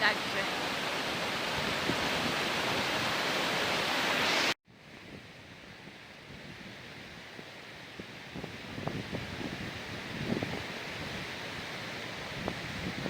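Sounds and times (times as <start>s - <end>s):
waterfall roaring: 0.0s - 4.6s
wind buffeting microphone: 4.9s - 13.0s.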